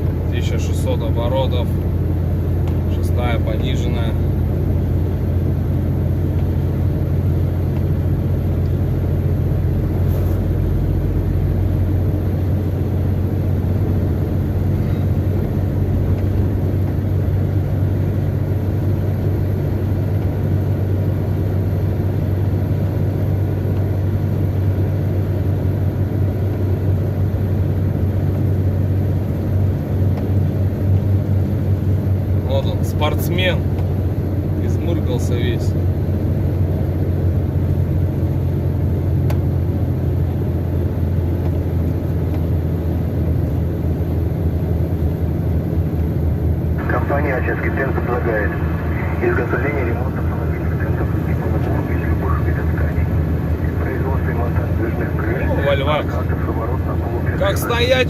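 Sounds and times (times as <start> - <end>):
diesel truck engine droning: 0.0 - 58.0.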